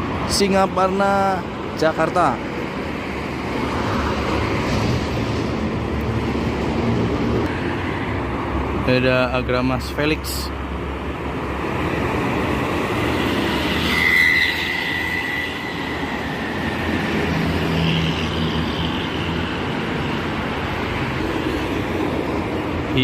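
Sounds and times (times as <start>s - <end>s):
highway traffic passing: 0.0s - 23.0s
thin high whine: 13.0s - 19.4s.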